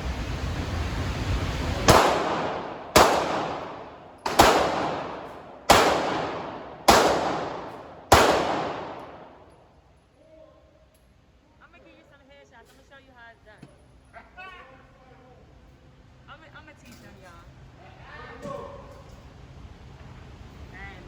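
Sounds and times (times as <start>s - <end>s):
steady low rumble: 0.0s - 9.6s
handgun shots echoing: 1.9s - 9.6s.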